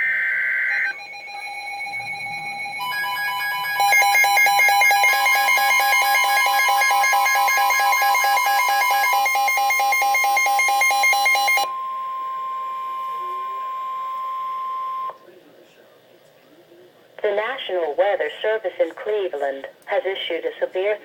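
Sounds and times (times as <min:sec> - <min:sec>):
rapid pulsing electronic beeping: 0:00.0 - 0:11.6
steady alert tone: 0:00.0 - 0:11.9.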